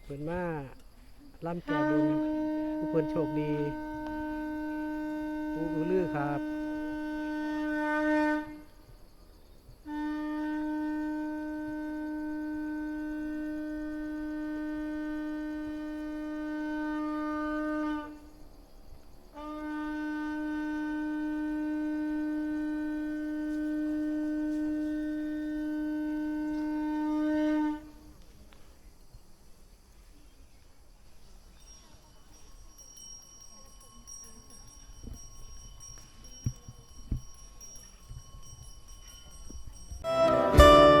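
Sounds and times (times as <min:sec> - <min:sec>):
horn-like wind instrument notes: 0:01.4 - 0:09.0, 0:09.8 - 0:18.4, 0:19.3 - 0:28.3, 0:34.1 - 0:41.0.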